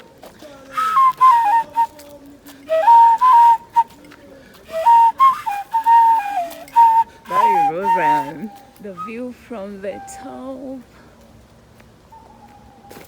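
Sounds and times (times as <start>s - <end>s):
flute melody: 0.7s - 2.1s, 2.7s - 4.0s, 4.7s - 10.6s.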